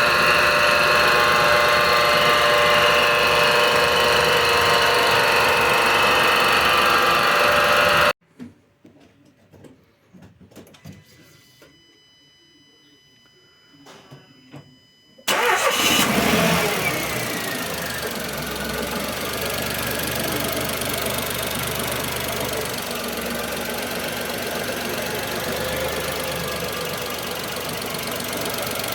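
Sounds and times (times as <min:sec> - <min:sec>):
car engine cranking and starting: 0:00.0 - 0:08.1, 0:15.3 - 0:28.9
car engine idling: 0:00.0 - 0:08.1, 0:15.3 - 0:28.9.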